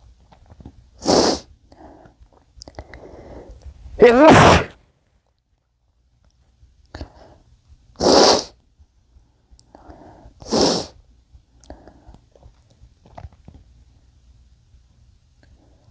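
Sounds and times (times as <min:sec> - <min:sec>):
hitching breath: 0:01.3 - 0:03.7, 0:09.6 - 0:12.4
man sneezing: 0:04.0 - 0:04.8.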